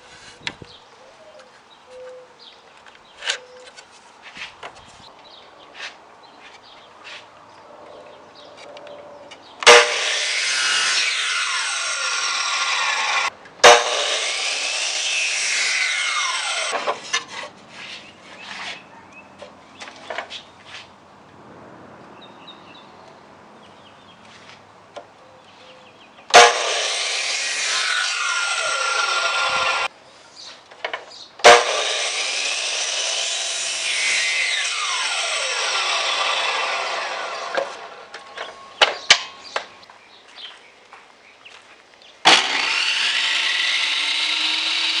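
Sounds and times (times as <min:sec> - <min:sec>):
power saw cutting wood: 0:09.6 - 0:17.5, 0:26.3 - 0:29.9, 0:31.4 - 0:39.7, 0:42.3 - 0:45.0.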